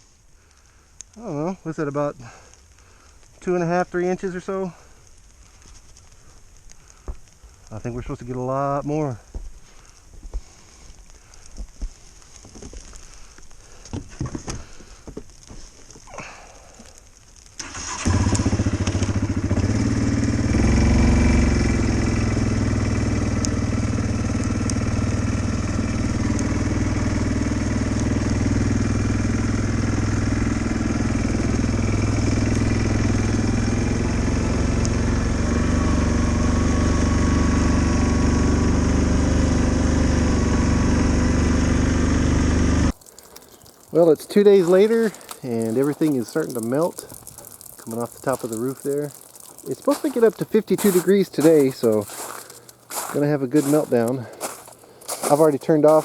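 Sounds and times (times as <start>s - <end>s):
engine idling: 17.6s - 43.0s.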